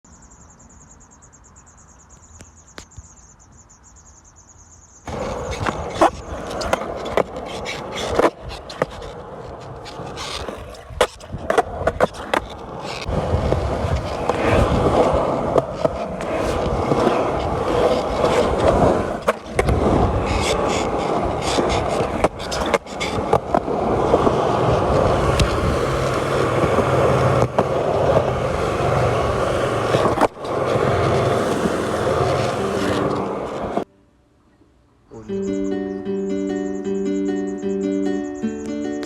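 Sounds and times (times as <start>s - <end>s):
faint high insect trill: 0.0s - 5.1s
hard wheels rolling on pavement: 5.0s - 33.9s.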